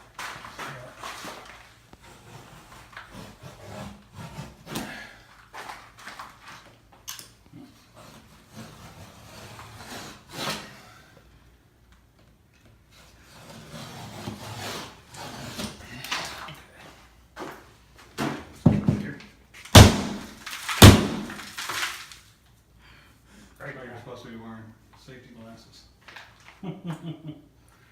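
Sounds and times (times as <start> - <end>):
scraping and handling noises: 0.0 - 10.7
heavy blows on wall: 19.8 - 21.4.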